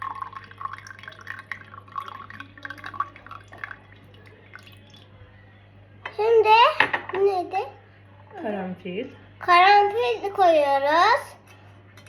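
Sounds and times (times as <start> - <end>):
water pouring into container: 0.0 - 5.2.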